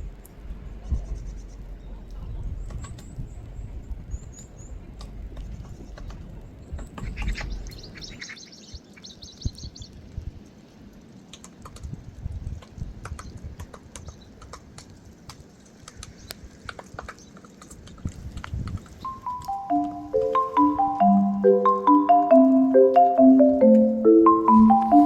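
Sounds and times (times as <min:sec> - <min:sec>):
woodpecker tapping on bark: 0:11.3 - 0:20.9.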